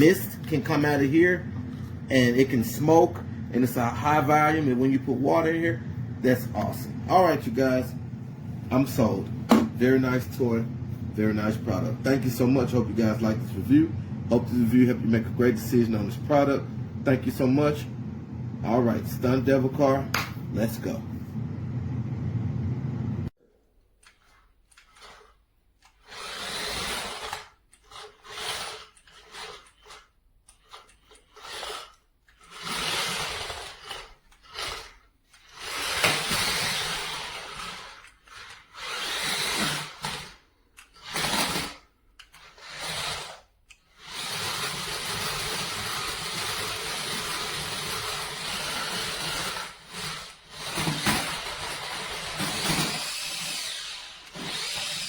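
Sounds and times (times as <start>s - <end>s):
toy car electric motors whirring: 24.0s - 55.0s.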